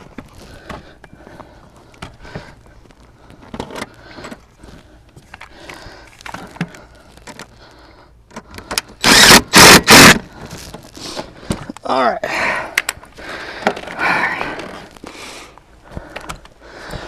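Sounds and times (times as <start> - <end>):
loud noisy blasts: 9.0 - 10.2.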